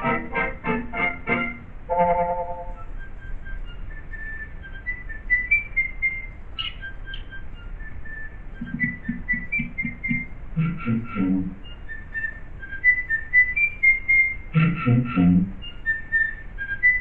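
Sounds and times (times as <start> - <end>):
person whistling a tune: 2.0 - 6.4, 7.0 - 17.0
soft low beats: 7.9 - 11.9, 14.5 - 15.7.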